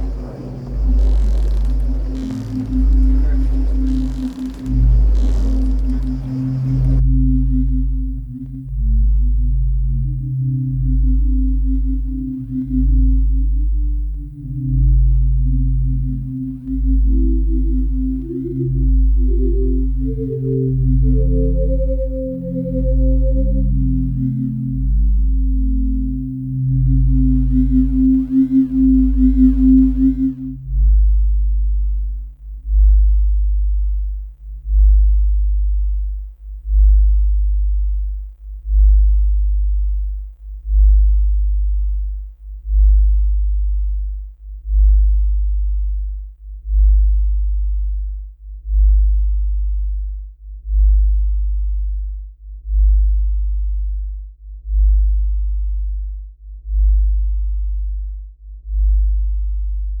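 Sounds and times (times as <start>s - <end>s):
higher steady tones: 0.0s - 30.7s
deep pulsing tone: 0.0s - 50.1s.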